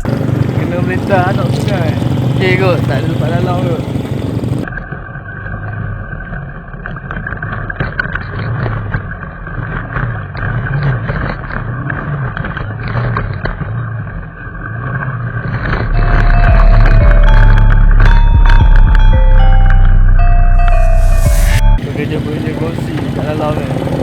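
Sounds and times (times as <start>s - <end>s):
small motorcycle engine revving: 0.0s - 16.0s
loud music with heavy bass: 15.8s - 21.8s.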